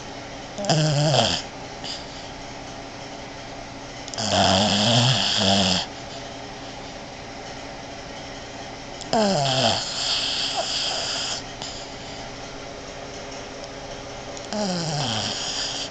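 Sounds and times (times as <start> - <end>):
dog snoring: 0.6 - 2.3, 4.1 - 6.2, 9.0 - 12.2, 14.5 - 15.9.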